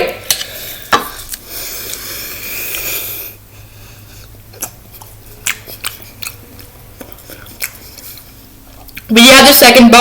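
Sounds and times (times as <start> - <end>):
breathy hissing: 0.5 - 4.3.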